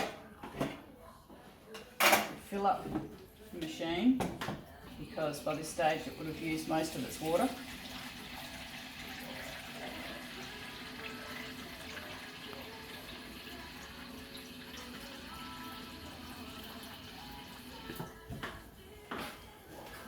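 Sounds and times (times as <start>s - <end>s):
water running: 5.5s - 18.3s.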